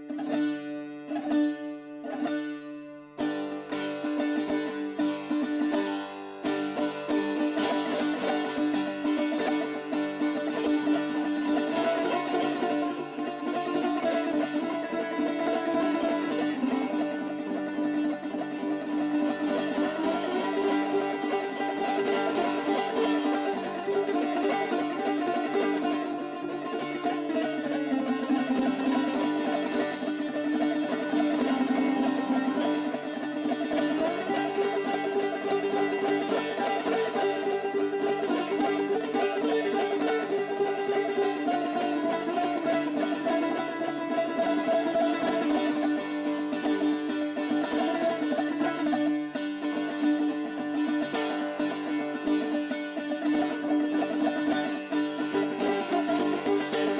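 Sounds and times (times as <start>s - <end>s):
plucked lute improvisation: 0.0s - 56.9s.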